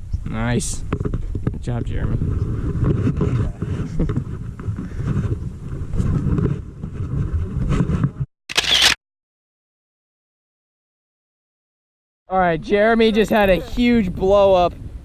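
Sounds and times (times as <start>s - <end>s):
wind buffeting microphone: 0.0s - 8.2s, 12.5s - 15.0s.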